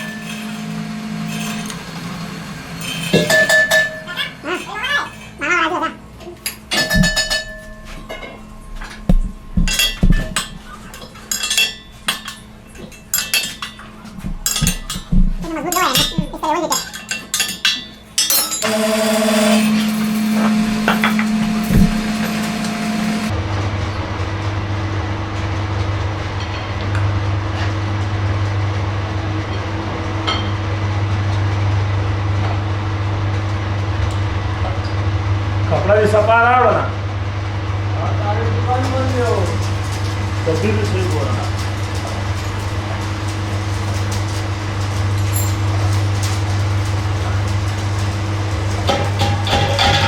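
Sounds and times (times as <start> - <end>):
metal parts clanking and ringing: 0.0 - 23.3, 38.8 - 50.0
low machine hum: 0.0 - 50.0.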